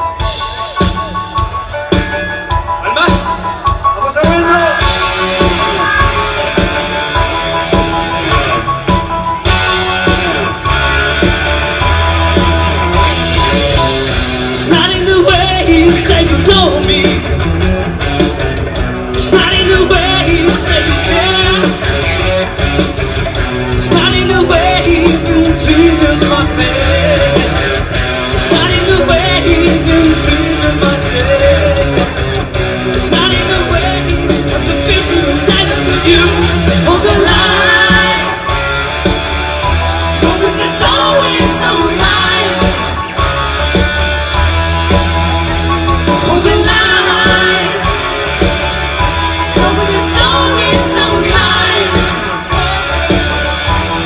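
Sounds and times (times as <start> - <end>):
guitar: 0.0 - 54.0
person singing: 13.0 - 17.4, 19.1 - 22.5, 23.6 - 38.9, 39.7 - 43.6, 45.9 - 54.0.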